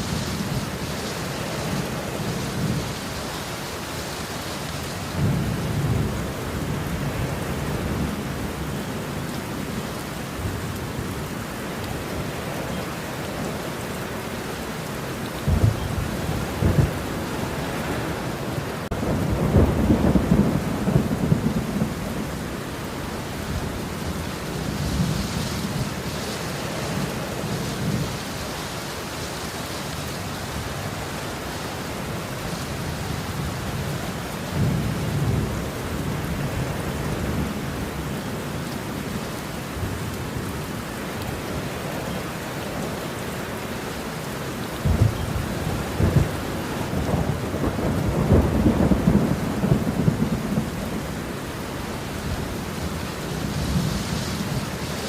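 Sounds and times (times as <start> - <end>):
steady rain: 0.0 - 55.0
distant thunder rumbling: 15.4 - 28.4, 44.7 - 55.0.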